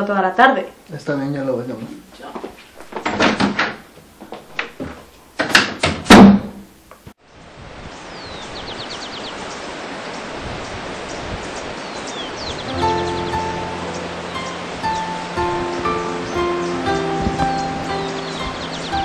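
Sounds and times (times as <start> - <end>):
steady hiss: 6.6 - 19.0
bird chirp and trill: 8.0 - 19.0.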